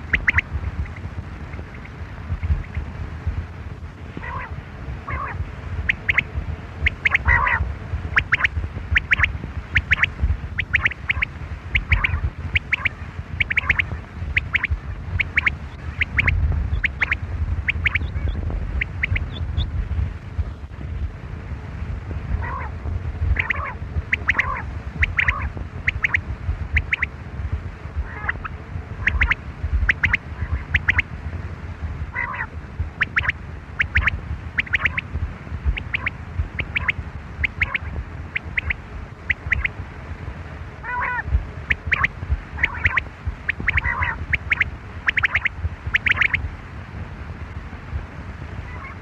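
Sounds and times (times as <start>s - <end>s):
quail calling: 0.0s - 2.8s, 4.2s - 19.7s, 22.4s - 22.7s, 23.4s - 26.2s, 26.8s - 27.1s, 28.0s - 31.1s, 32.1s - 35.1s, 35.7s - 39.8s, 40.8s - 46.4s, 48.7s - 49.0s
low rumbling background: 0.0s - 49.0s.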